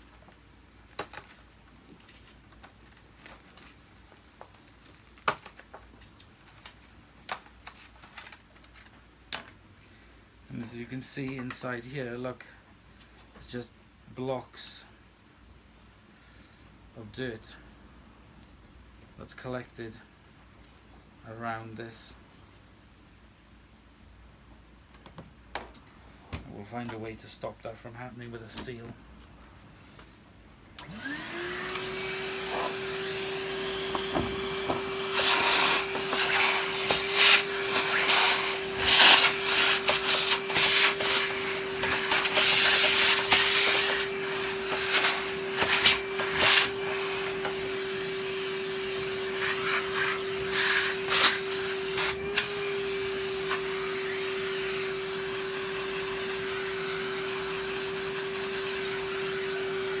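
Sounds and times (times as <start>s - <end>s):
vacuum cleaner motor running: 30.8s - 60.0s
vacuum nozzle rushing surges: 30.8s - 60.0s.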